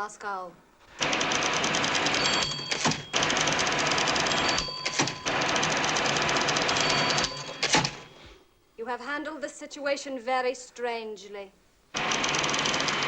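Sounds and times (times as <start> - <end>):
typewriter keys striking fast: 1.0 - 8.1, 12.0 - 13.0
typewriter carriage return: 1.0 - 8.2, 12.0 - 13.0
typewriter bell ding: 1.0 - 8.3.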